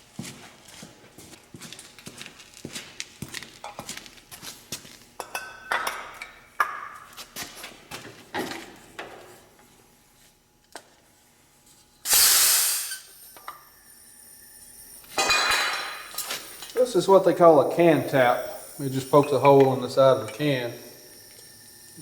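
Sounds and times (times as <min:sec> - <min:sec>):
short loud hiss: 0:12.1 - 0:13.4
metal tools clinking: 0:15.2 - 0:22.0.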